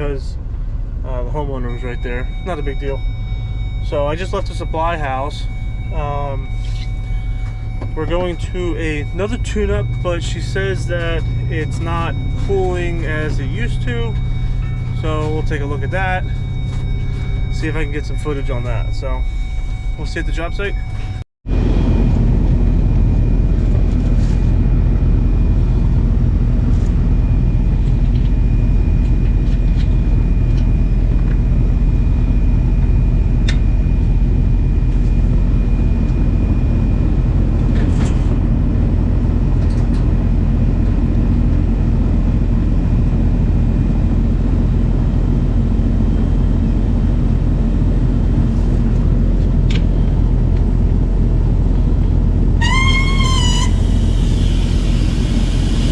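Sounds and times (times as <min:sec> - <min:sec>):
road noise: 0:00.0 - 0:32.2, 0:32.9 - 0:55.9
vehicle engine rumble: 0:00.0 - 0:55.9
faint high whine: 0:01.1 - 0:37.2.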